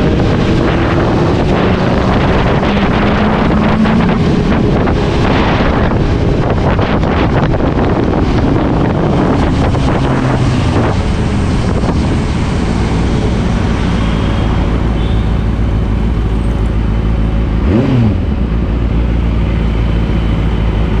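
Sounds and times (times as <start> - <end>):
wind on microphone: 0.0 - 17.0
motorcycle engine running: 0.0 - 21.0.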